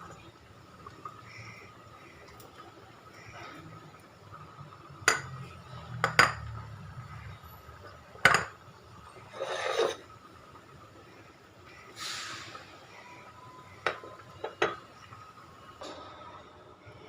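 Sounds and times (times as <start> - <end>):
utensil scraping in pot: 9.2 - 10.1.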